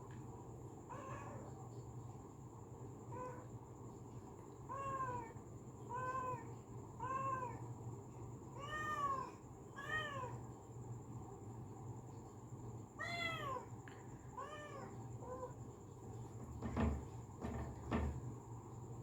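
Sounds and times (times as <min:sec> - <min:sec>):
cat meowing: 0:08.6 - 0:10.3, 0:13.0 - 0:13.7, 0:14.4 - 0:15.5.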